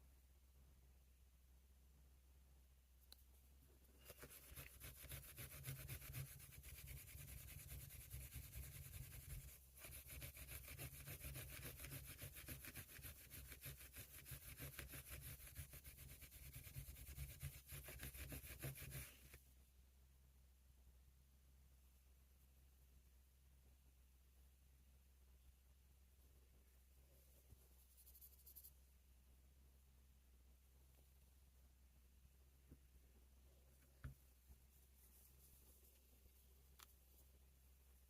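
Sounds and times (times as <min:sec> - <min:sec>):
emery cloth rubbing on knife: 0:04.0 - 0:19.4.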